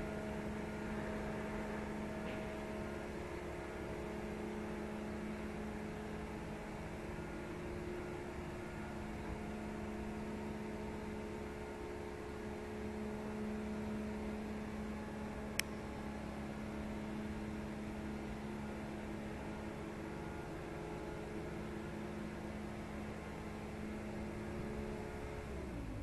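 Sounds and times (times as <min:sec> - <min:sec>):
boat engine humming: 0:00.0 - 0:26.0.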